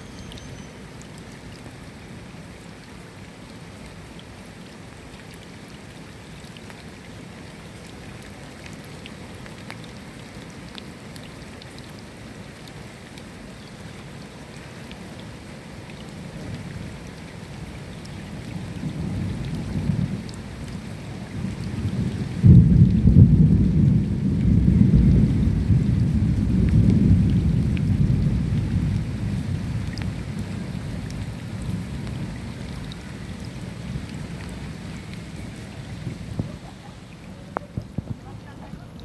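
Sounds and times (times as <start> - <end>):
steady rain: 0.0 - 39.0
thunder rumbling: 21.4 - 36.7.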